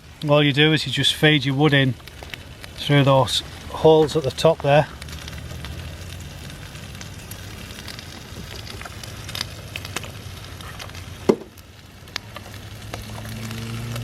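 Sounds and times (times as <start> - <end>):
bacon sizzling: 0.0 - 14.0
burning wood crackling: 0.0 - 14.0.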